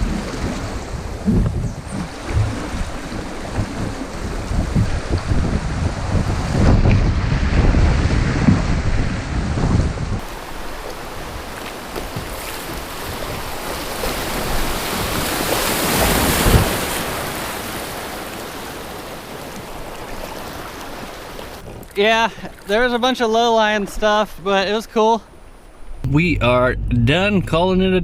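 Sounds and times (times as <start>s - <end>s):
wind buffeting microphone: 0.0s - 18.0s
river water rushing: 10.2s - 21.8s.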